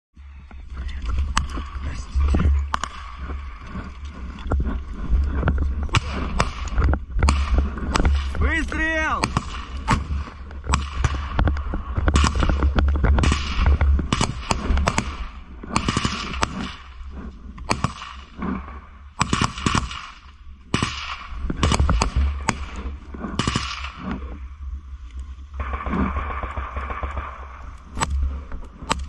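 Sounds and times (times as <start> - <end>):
small-arms gunfire: 5.9 - 17.0, 17.6 - 24.2, 25.6 - 29.0.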